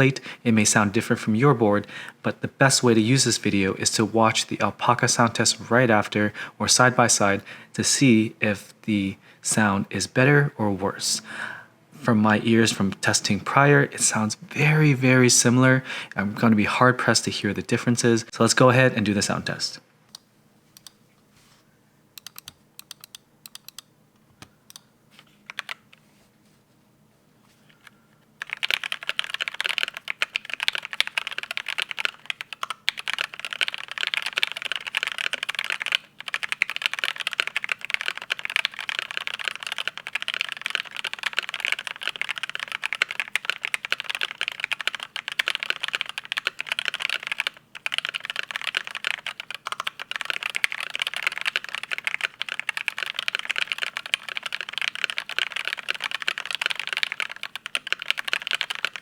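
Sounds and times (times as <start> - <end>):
fast mechanical keyboard typing: 22.2 - 23.8, 25.5 - 25.8, 28.4 - 59.0.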